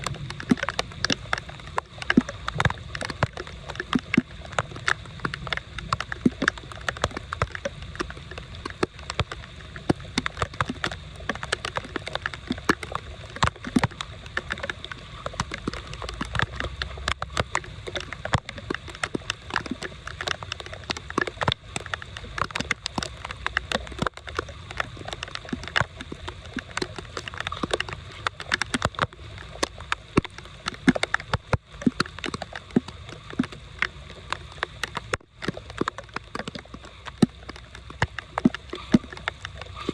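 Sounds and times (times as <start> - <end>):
sharp splashes and ticks: 0.0 - 39.9
water gurgling and sloshing: 0.0 - 39.9.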